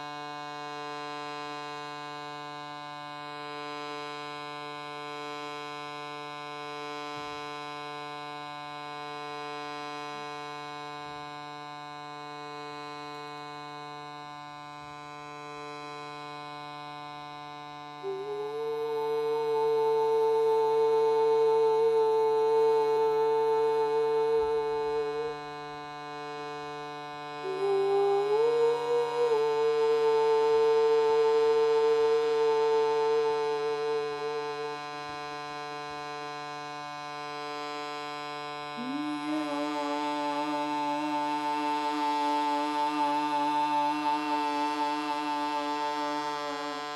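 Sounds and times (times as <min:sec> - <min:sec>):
shruti box drone: 0:00.0 - 0:46.9
person singing wordless long notes: 0:17.8 - 0:46.9.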